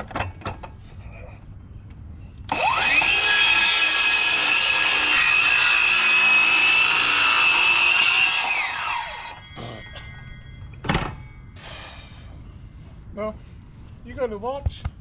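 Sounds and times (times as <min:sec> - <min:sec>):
power tool motor whine cutting: 0:02.5 - 0:09.4.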